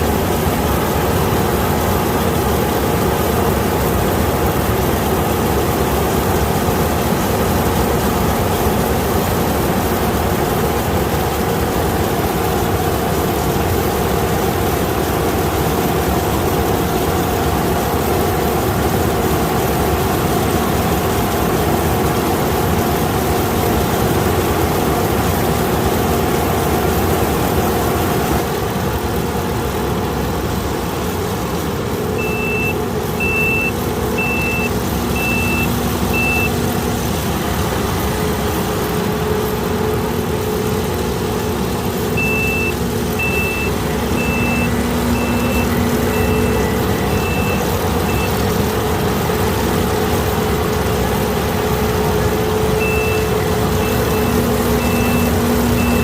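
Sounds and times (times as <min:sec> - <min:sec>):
combine harvester running: 0:00.0 - 0:56.0
high warning beeper: 0:32.2 - 0:36.6, 0:42.2 - 0:48.5, 0:52.8 - 0:56.0.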